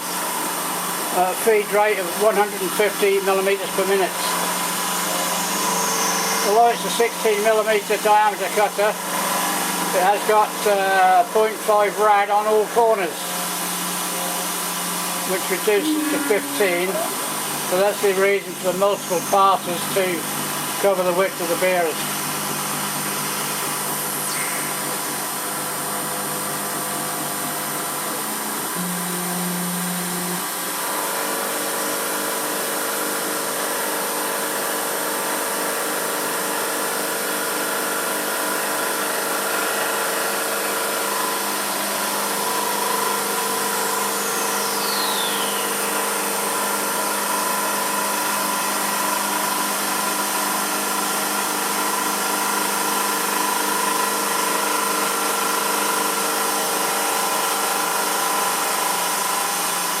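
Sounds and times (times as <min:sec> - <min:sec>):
milling machine cutting metal: 0:00.0 - 0:44.6
steady whining tones: 0:01.1 - 0:21.6.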